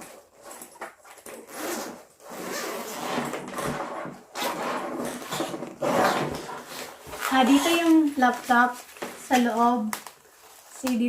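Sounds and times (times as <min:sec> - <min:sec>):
zipper being pulled: 0:00.0 - 0:08.2
fabric rustling: 0:04.1 - 0:11.0.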